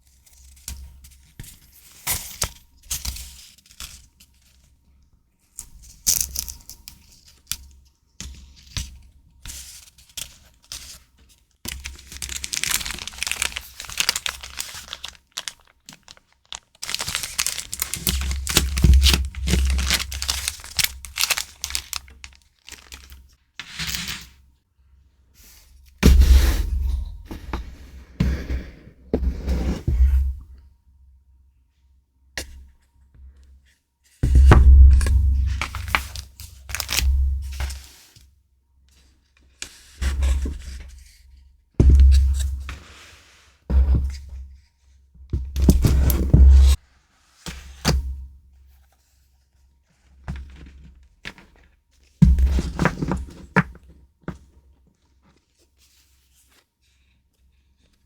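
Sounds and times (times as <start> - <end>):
packaging rustling and tearing: 11.7 - 23.2, 35.6 - 37.2.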